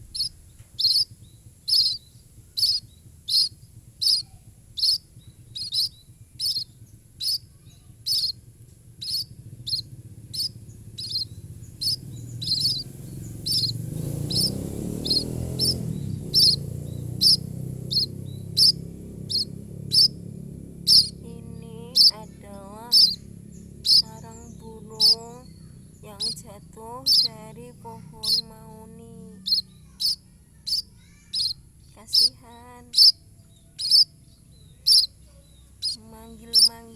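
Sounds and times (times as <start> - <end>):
chick chirping: 0.0 - 1.1, 1.7 - 2.0, 2.6 - 7.5, 8.1 - 8.4, 9.0 - 20.2, 20.8 - 34.1, 34.8 - 36.9
lower wavering bird call: 0.0 - 20.2, 20.8 - 21.3, 21.9 - 26.4, 27.1 - 27.3, 28.2 - 28.5, 29.4 - 35.2, 35.8 - 36.7
low rumble: 0.0 - 30.8.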